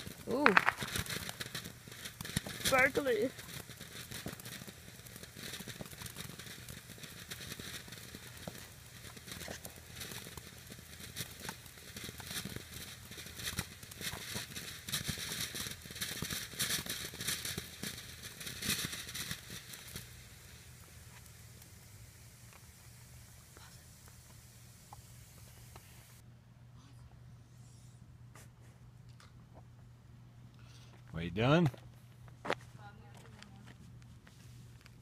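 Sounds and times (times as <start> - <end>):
firework fountain hissing and crackling: 0.0 - 26.2.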